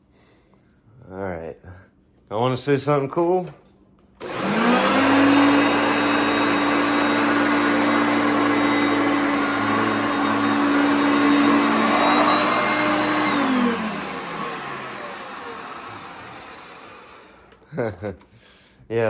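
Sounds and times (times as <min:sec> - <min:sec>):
vacuum motor winding down: 0:04.2 - 0:17.7
upright vacuum cleaner running: 0:04.2 - 0:18.0.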